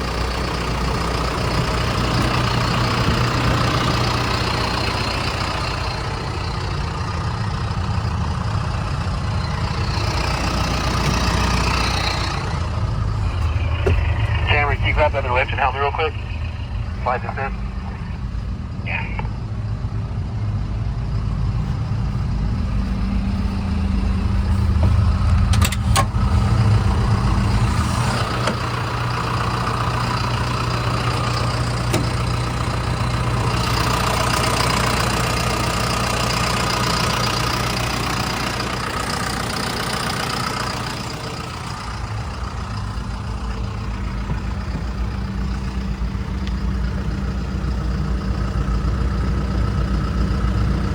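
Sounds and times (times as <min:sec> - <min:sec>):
diesel engine running: 0:00.0 - 0:50.9
higher-pitched engine noise: 0:00.0 - 0:50.9.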